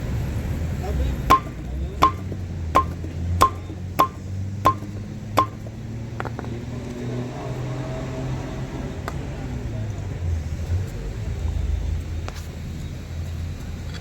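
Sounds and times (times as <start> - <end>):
ringing metal strikes: 1.3 - 5.8.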